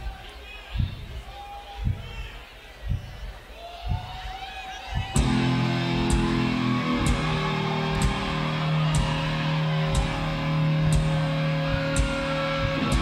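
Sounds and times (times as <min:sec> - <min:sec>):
kick drum and cymbal hits: 0:03.9 - 0:13.0
heavy metal band playing: 0:05.2 - 0:13.0.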